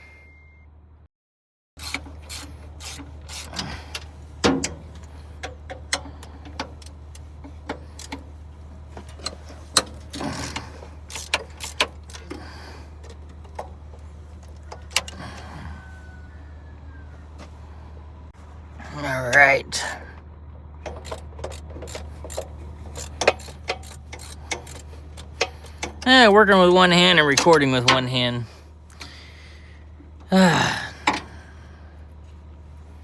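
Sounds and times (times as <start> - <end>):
hand tools clanking on metal: 1.8 - 15.5, 20.8 - 29.2.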